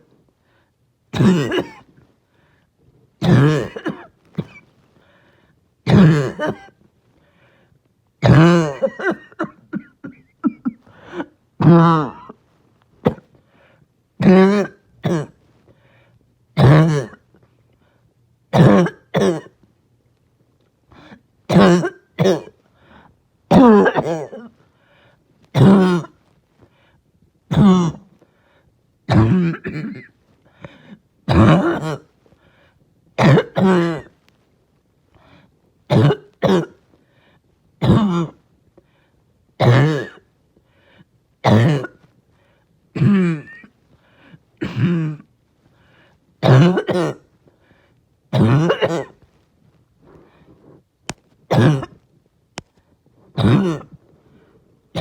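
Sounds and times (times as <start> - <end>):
person coughing harshly: 1.2 - 1.9, 3.2 - 4.7, 5.9 - 6.8, 8.2 - 12.4, 13.0 - 13.3, 14.2 - 15.4, 16.6 - 17.2, 18.5 - 19.6, 21.0 - 22.6, 23.5 - 24.5, 25.6 - 26.2, 27.5 - 28.1, 29.1 - 32.1, 33.2 - 34.1, 35.9 - 36.8, 37.8 - 38.4, 39.6 - 40.3, 41.4 - 42.1, 42.9 - 43.7, 44.6 - 45.3, 46.4 - 47.3, 48.3 - 49.2, 51.5 - 52.0, 53.3 - 54.0.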